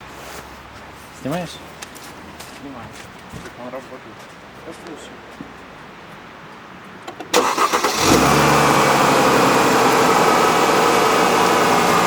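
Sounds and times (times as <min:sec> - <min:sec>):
car engine cold idle: 0:07.3 - 0:12.0.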